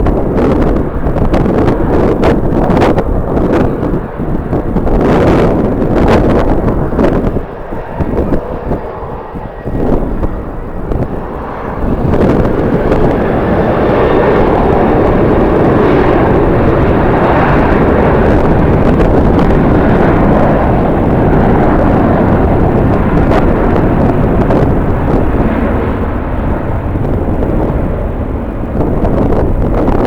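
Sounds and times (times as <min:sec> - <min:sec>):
jet airliner engine rumble: 0:00.0 - 0:30.0
wind buffeting microphone: 0:00.0 - 0:30.0.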